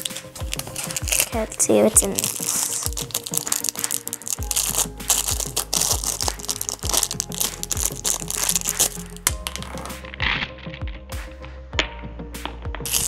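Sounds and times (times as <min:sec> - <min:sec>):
plastic wrapper crinkling and tearing: 0:00.0 - 0:10.8
background music with beat: 0:00.0 - 0:13.0.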